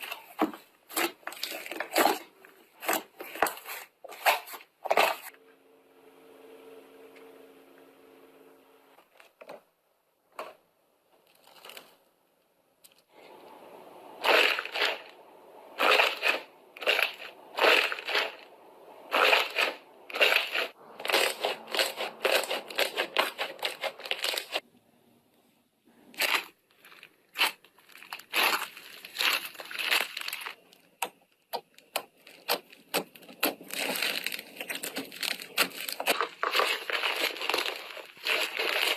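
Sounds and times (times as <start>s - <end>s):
slime crackling and crunching: 14.2s - 15.2s, 15.8s - 18.5s, 19.1s - 24.6s, 26.2s - 38.9s.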